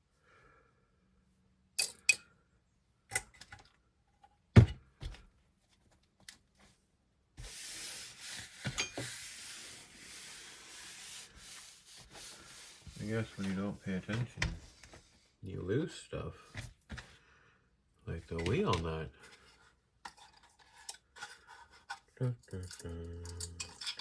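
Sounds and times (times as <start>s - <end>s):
small parts clicking and tapping: 1.8s - 2.3s, 22.4s - 24.0s
rubbing and shuffling: 5.1s - 15.4s, 16.3s - 17.2s, 18.1s - 22.2s.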